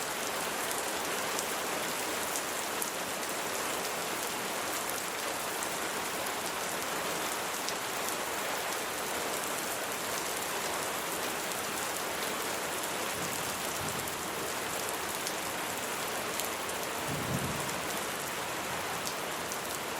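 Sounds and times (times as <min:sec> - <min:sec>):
steady rain falling: 0:00.0 - 0:19.9.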